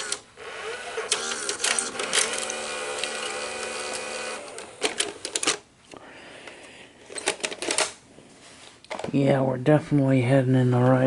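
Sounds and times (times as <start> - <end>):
cassette recorder whirring hum: 0.0 - 6.0.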